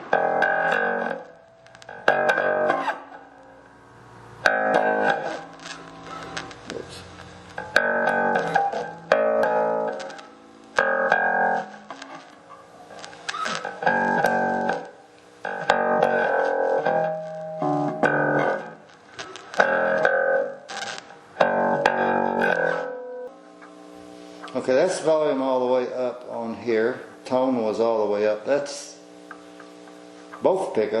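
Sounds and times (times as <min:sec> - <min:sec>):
plucked electric bass notes: 0:00.0 - 0:12.5, 0:13.6 - 0:18.9, 0:19.5 - 0:20.7, 0:21.3 - 0:23.8.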